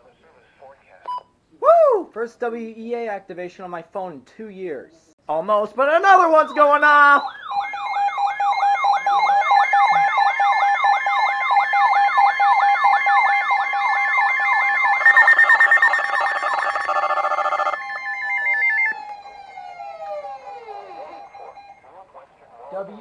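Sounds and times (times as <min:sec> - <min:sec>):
warbling high tone: 0:06.0 - 0:21.9
steady beeps: 0:06.1 - 0:19.1
rapid pulsed beeping: 0:06.2 - 0:19.0
falling alert chirps: 0:06.4 - 0:21.8.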